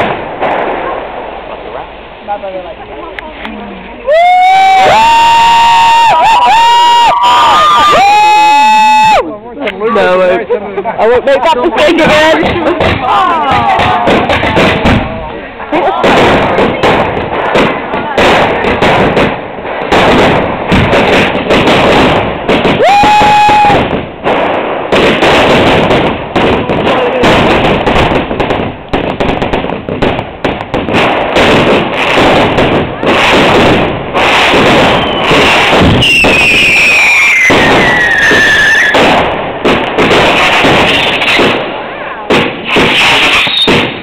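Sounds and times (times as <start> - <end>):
fireworks bangs and crackling: 0.0 - 44.0
firework whistle: 34.2 - 39.4, 42.6 - 44.0.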